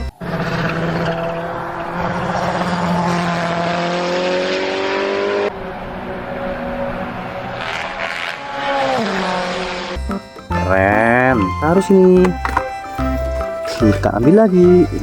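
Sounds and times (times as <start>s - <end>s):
sports car engine revving: 0.0s - 10.6s.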